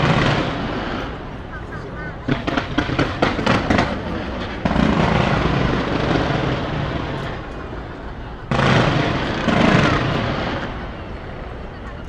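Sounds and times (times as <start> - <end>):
fireworks booming: 0.0 - 12.0.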